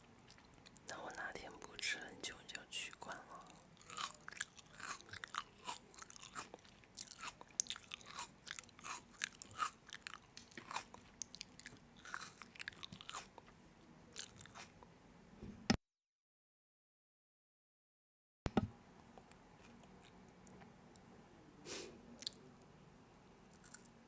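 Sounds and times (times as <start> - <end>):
person chewing crunchy food: 0.2 - 0.9, 3.0 - 13.5, 14.1 - 14.8, 19.2 - 20.6, 23.5 - 24.0.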